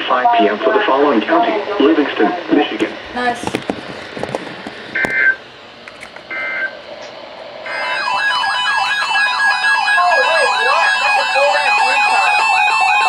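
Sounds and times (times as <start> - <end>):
warbling electronic siren tones: 6.3 - 6.8, 7.6 - 13.0.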